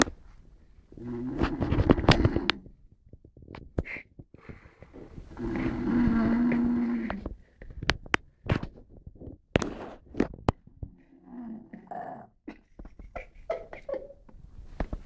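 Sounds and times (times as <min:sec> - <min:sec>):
quiet breathing: 0:00.2 - 0:08.5
rattling snores: 0:00.9 - 0:02.8, 0:04.4 - 0:07.4.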